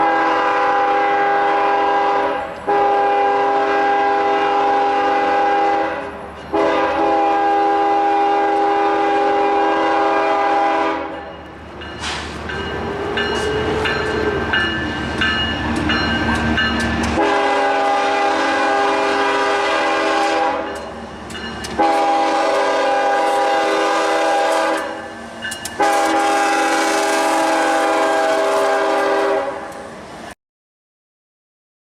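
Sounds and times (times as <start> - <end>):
locomotive air horn blasts: 0.0 - 11.3, 17.0 - 20.8, 21.7 - 25.0, 25.8 - 29.7.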